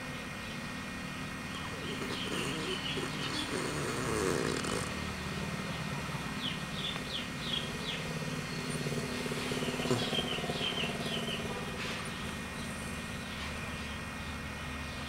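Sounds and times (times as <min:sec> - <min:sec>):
dog snoring: 0:01.5 - 0:05.2, 0:06.4 - 0:13.0.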